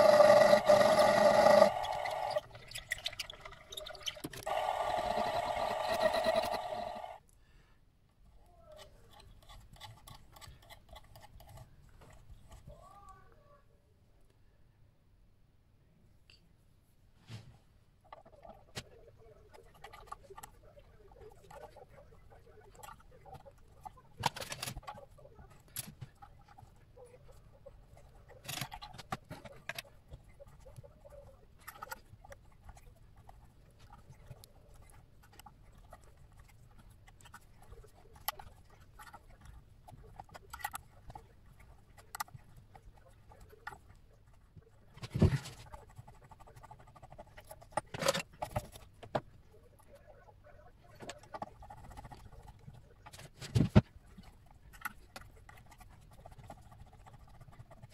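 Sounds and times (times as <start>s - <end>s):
small clicks and scratches: 8.1s - 13.2s, 17.2s - 57.9s.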